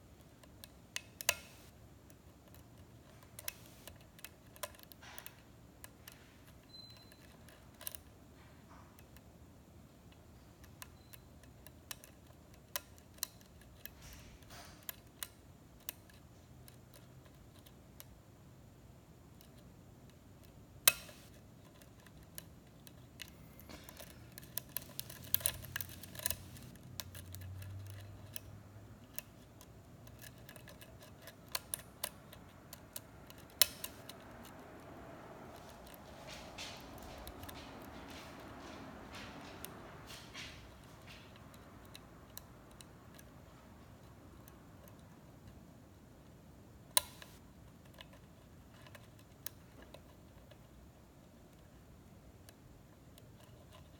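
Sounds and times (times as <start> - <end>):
lock pick clicking in a lock: 0.4 - 8.1, 19.4 - 34.6.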